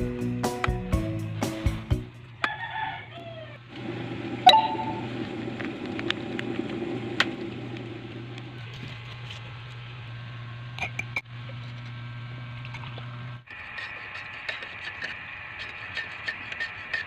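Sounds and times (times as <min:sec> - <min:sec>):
rooster crowing: 0:02.4 - 0:03.6.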